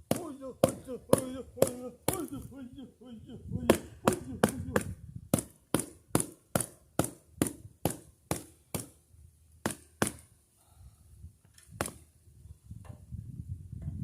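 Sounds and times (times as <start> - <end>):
hatchet chopping branches: 0.0 - 2.5, 3.6 - 9.0, 9.6 - 10.3, 11.6 - 12.1.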